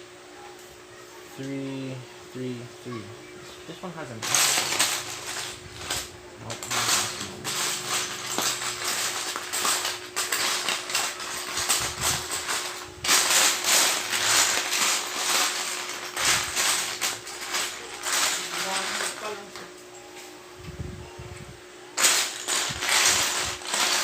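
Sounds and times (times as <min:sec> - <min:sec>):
plastic bricks clattering and clicking: 0:04.2 - 0:19.2, 0:22.0 - 0:24.0.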